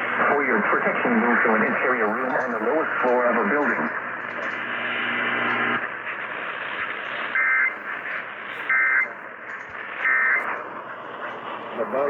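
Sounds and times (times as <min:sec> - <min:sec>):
radio hiss: 0:00.0 - 0:12.0
digital data tone squawks: 0:07.3 - 0:07.8, 0:08.7 - 0:09.1, 0:10.0 - 0:10.5.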